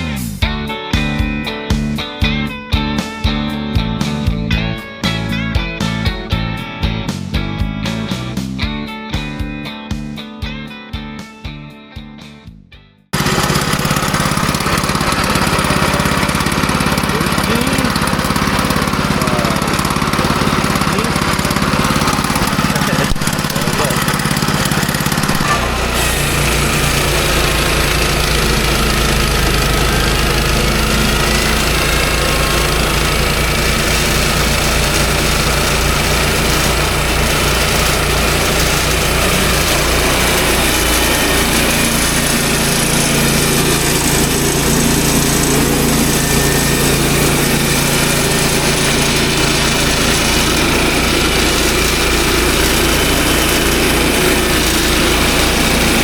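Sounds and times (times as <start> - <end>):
sawmill gasoline engine running: 13.2 - 56.0.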